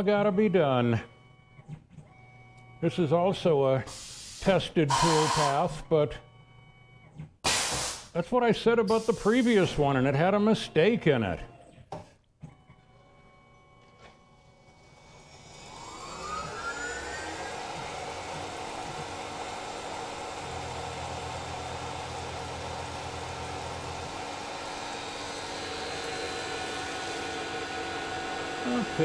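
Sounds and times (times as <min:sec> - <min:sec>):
mill spindle motor whine: 0:04.8 - 0:07.1, 0:12.5 - 0:29.0
lower hum: 0:14.6 - 0:27.4.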